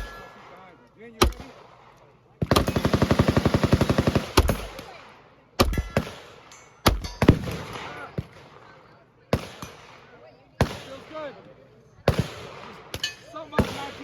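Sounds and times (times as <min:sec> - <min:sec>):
automatic gunfire burst: 0:02.4 - 0:05.0
single gunshots: 0:12.1 - 0:14.0.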